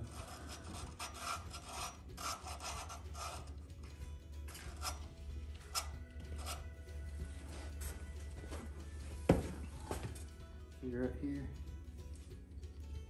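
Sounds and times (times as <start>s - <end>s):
rasping scraping strokes: 0.0s - 8.8s
steady low hum: 0.0s - 13.0s.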